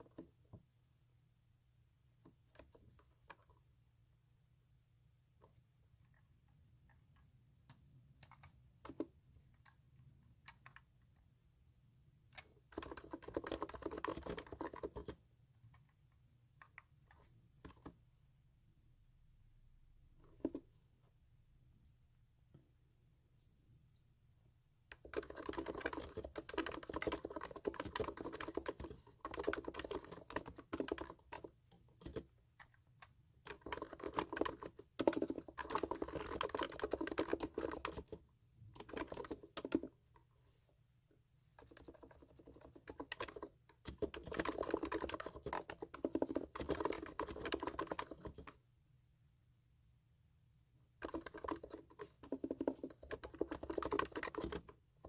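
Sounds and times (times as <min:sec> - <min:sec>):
computer keyboard typing: 0:07.7 - 0:09.8, 0:12.4 - 0:15.2, 0:24.9 - 0:32.8, 0:33.4 - 0:40.0, 0:41.6 - 0:48.6, 0:51.0 - 0:54.8.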